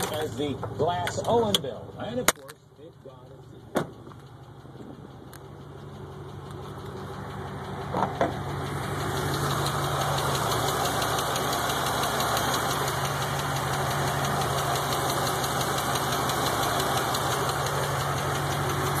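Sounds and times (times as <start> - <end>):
car engine idling with ticking: 0.0 - 19.0
engine knocks: 0.0 - 19.0.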